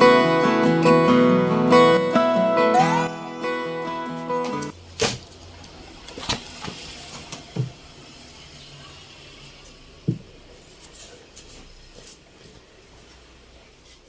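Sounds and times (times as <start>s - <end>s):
acoustic guitar music: 0.0s - 4.7s.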